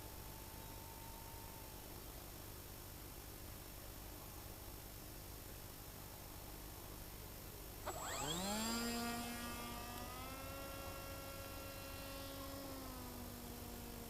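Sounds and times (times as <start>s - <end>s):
model plane electric motor whine: 7.9s - 14.0s.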